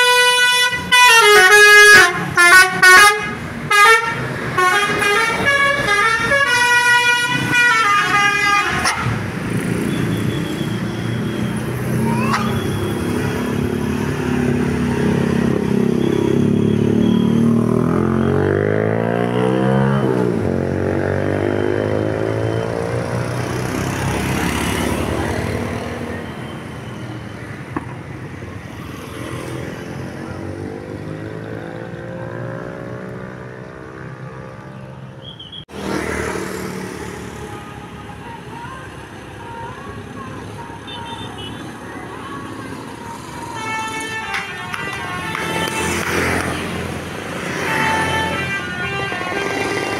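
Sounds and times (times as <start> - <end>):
multi-tone bus horn tune: 0.0 - 9.2, 40.6 - 41.8, 43.3 - 49.9.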